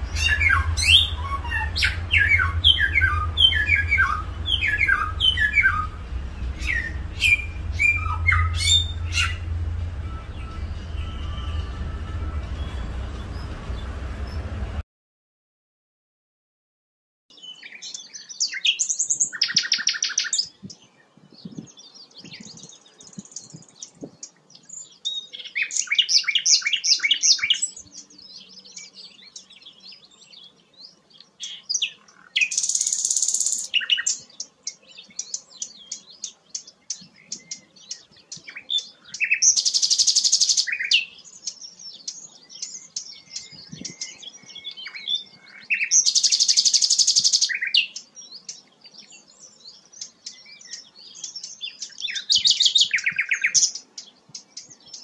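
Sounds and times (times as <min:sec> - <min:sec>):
rapid bird trills: 0:00.0 - 0:13.6, 0:31.3 - 0:48.8
songbird singing: 0:00.0 - 0:14.8, 0:17.3 - 0:55.0.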